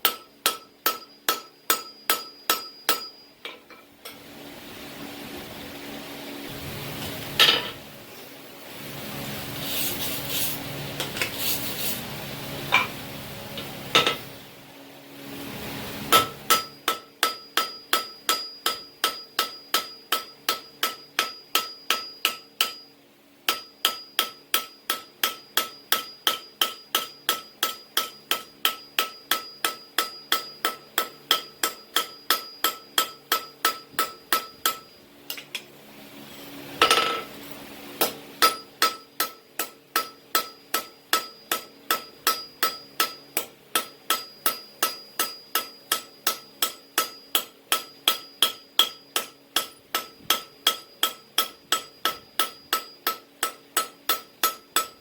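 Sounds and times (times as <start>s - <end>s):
hammer striking metal on anvil: 0.0s - 4.2s, 7.4s - 7.8s, 13.9s - 14.3s, 16.0s - 22.9s, 23.5s - 35.4s, 36.8s - 37.3s, 38.0s - 55.0s.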